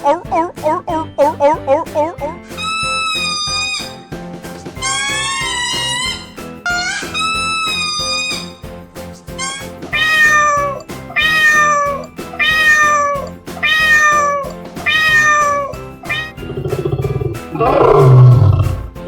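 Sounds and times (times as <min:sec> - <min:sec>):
background music: 0:00.0 - 0:19.0
animal calls: 0:04.8 - 0:08.5, 0:09.4 - 0:18.9.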